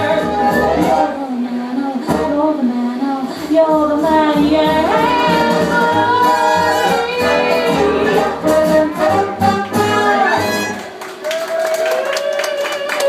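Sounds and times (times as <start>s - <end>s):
pulsing bass line: 0.0s - 1.2s, 4.0s - 10.8s.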